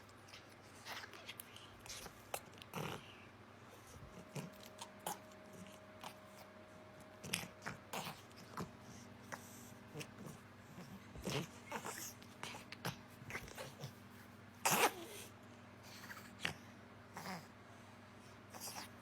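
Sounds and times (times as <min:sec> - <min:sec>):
cat chewing: 0:00.0 - 0:14.0.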